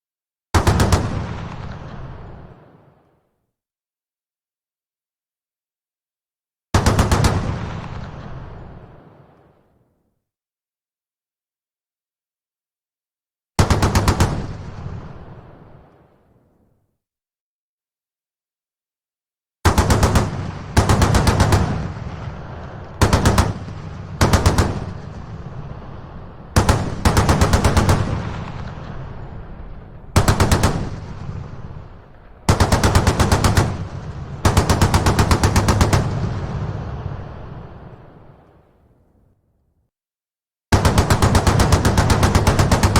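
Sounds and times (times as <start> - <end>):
rolling gunfire echo: 0.6 - 3.4, 6.8 - 10.0, 13.6 - 16.6, 19.6 - 39.1, 40.7 - 42.9.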